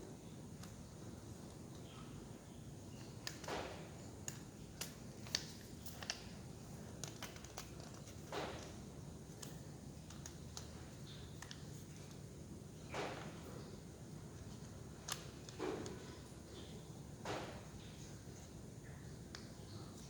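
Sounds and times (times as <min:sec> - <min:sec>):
small parts clicking and tapping: 0:02.9 - 0:12.3, 0:14.3 - 0:16.7.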